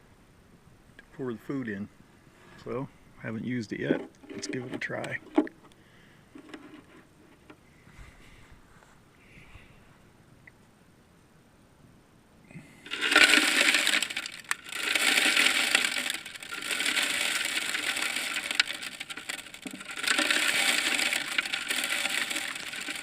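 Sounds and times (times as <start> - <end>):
birdseed rattling onto wood: 12.9 - 23.0.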